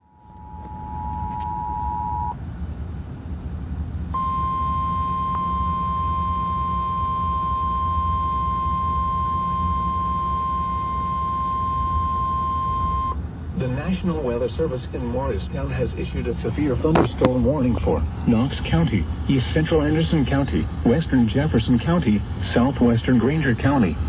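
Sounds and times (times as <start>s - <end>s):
steady warning alarm tone: 0.0s - 2.4s, 4.2s - 13.2s
low rumbling hum: 0.0s - 24.0s
two steady alert tones: 0.2s - 2.4s, 4.2s - 13.2s.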